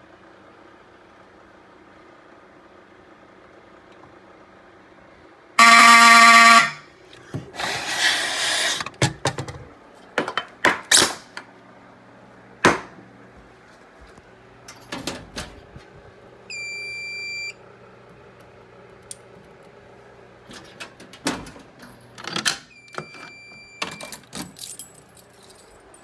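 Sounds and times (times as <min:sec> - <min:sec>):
fire alarm horn blast: 0:05.6 - 0:07.0, 0:16.5 - 0:17.6.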